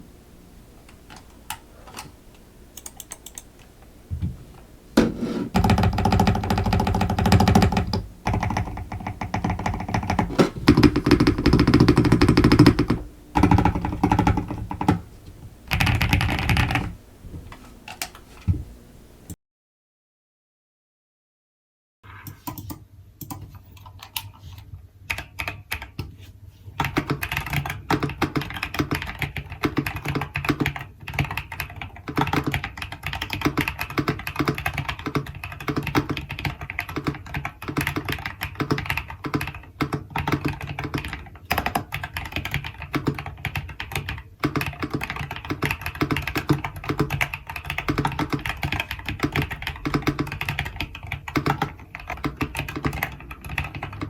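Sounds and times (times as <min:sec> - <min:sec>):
mechanical keyboard typing: 0:02.8 - 0:03.6, 0:05.0 - 0:15.0, 0:15.7 - 0:17.0, 0:22.3 - 0:26.1, 0:26.8 - 0:54.0.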